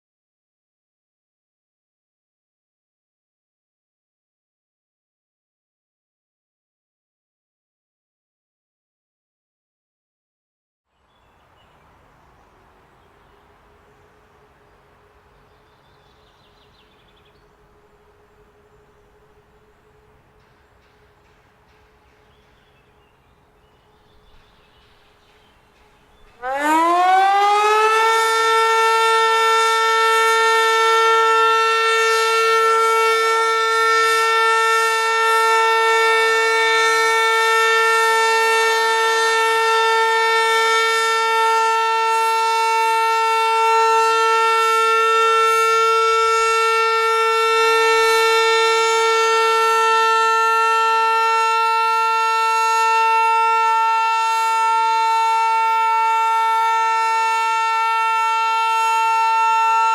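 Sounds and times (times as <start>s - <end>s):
civil defence siren steady tone: 11.8s - 59.9s.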